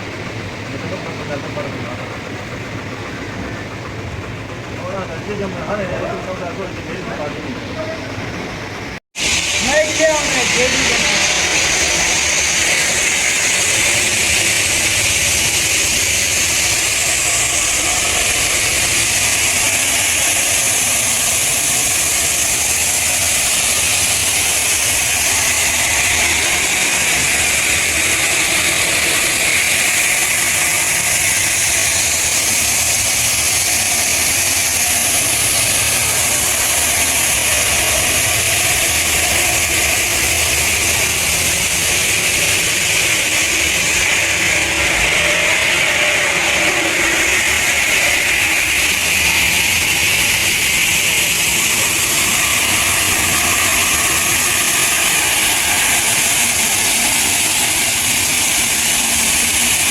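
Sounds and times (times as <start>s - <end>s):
industrial machine hissing: 0.0s - 59.9s
low hum: 0.0s - 59.9s.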